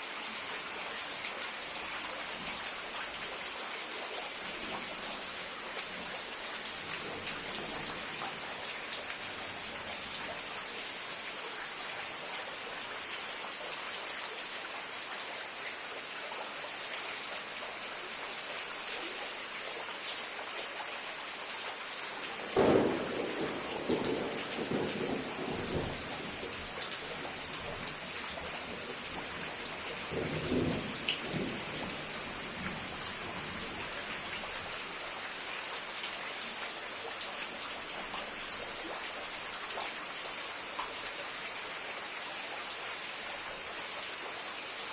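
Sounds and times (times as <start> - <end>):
heavy rain falling: 0.0 - 44.9
thunder rumbling: 22.6 - 27.8, 30.1 - 33.8.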